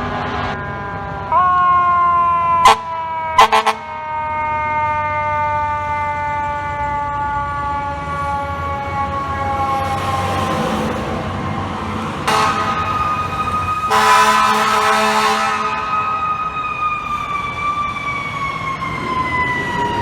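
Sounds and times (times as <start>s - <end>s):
fire truck siren: 0.0s - 20.0s
air horn blasts: 2.6s - 4.0s, 12.2s - 13.0s, 13.9s - 16.2s.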